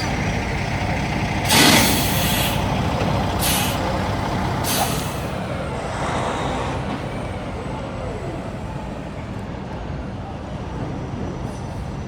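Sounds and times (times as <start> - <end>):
truck air brakes hissing: 0.0 - 7.4.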